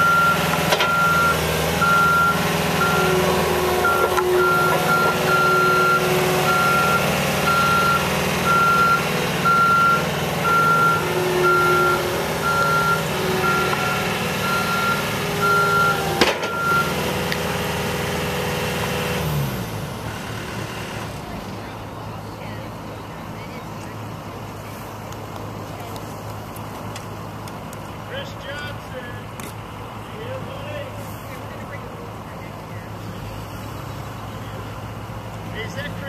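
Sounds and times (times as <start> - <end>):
backup alarm beeping: 0.0 - 17.1
loader engine running: 0.0 - 36.0.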